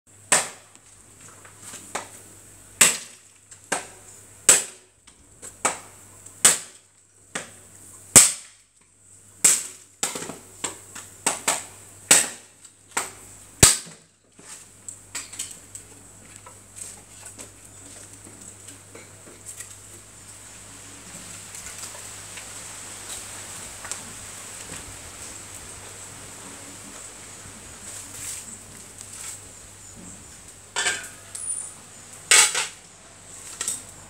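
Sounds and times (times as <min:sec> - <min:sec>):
sharp cracks or knocks: 0:08.2 - 0:08.6, 0:09.4 - 0:14.0.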